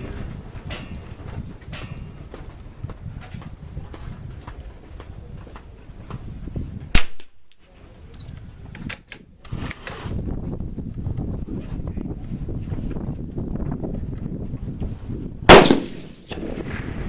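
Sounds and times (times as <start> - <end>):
rifle shot: 6.9 - 7.4, 15.5 - 17.0.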